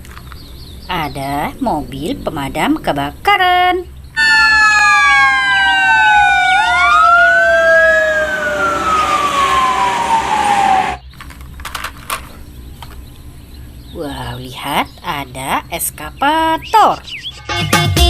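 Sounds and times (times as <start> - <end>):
toy siren: 4.2 - 11.0.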